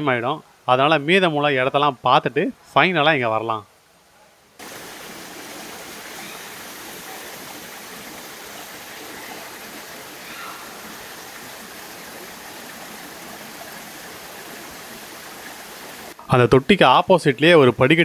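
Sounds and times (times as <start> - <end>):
stream rushing: 4.6 - 16.4.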